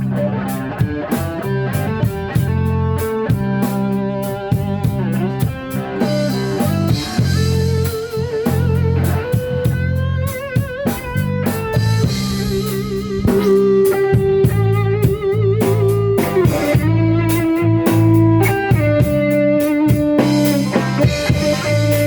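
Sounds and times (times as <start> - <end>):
bass guitar: 0.0 - 22.0
drum kit with cymbal beat: 0.0 - 22.0
electric guitar lead: 0.0 - 22.0
strummed guitar: 0.0 - 22.0.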